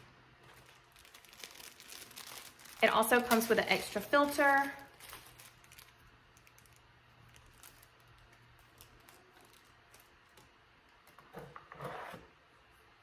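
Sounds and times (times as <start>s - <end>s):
packaging handling noise: 0.0s - 11.2s.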